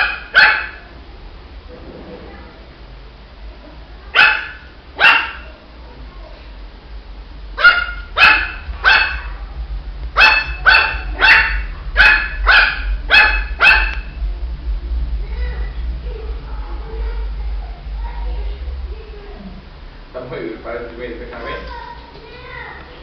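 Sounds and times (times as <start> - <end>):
puppy barking high-pitched yaps: 0.0 - 0.8, 4.2 - 5.5, 7.6 - 9.3, 10.2 - 14.1.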